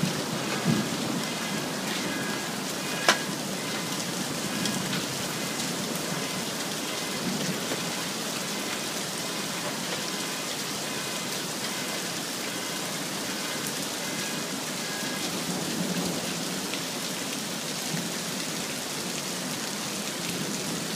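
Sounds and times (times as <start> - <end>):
hailstones striking hard surfaces: 0.0 - 13.8
heavy rain: 0.0 - 20.9.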